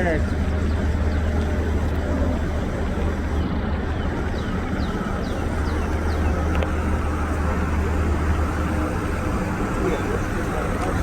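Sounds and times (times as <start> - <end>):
vehicle engine idling: 0.0 - 11.0.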